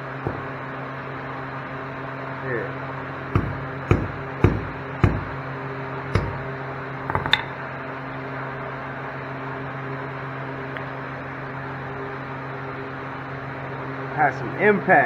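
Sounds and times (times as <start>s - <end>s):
steady machine hum: 3.1s - 7.6s
hammer blows on metal: 3.4s - 6.6s.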